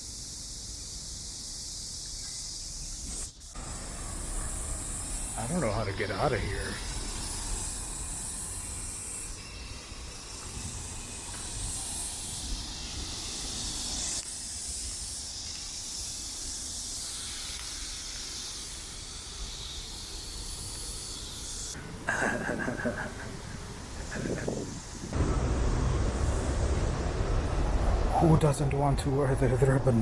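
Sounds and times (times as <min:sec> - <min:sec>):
cicadas buzzing: 0:00.0 - 0:30.0
distant city traffic rumble: 0:03.6 - 0:14.2, 0:19.1 - 0:30.0.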